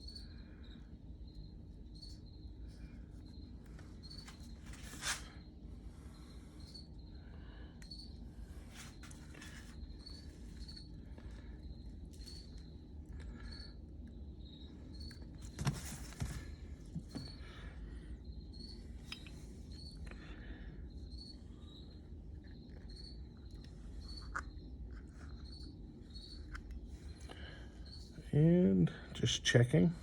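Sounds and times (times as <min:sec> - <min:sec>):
cricket chirping: 0:00.0 - 0:30.0
rustles and knocks of handwork: 0:15.1 - 0:17.5.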